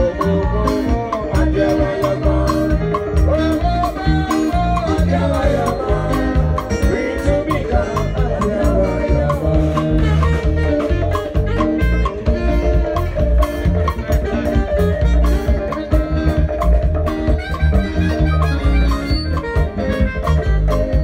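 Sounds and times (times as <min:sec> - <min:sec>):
heavy bass: 0:00.0 - 0:21.0
live band playing gospel groove: 0:00.0 - 0:21.0
steady drum beat: 0:00.0 - 0:21.0.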